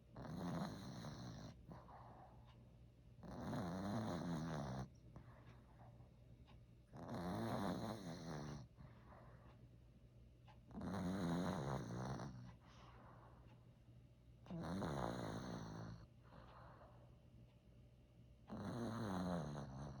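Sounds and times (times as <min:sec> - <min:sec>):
dog snoring: 0:00.1 - 0:02.6, 0:03.2 - 0:06.0, 0:06.9 - 0:09.6, 0:10.7 - 0:13.5, 0:14.4 - 0:17.0, 0:18.5 - 0:20.0
dog breathing: 0:00.2 - 0:02.6, 0:03.2 - 0:06.2, 0:06.9 - 0:09.6, 0:10.7 - 0:13.7, 0:14.5 - 0:17.2.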